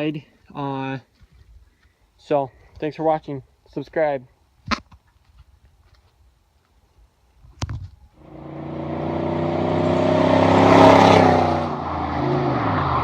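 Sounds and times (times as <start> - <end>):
pickup truck driving past: 8.2 - 13.0.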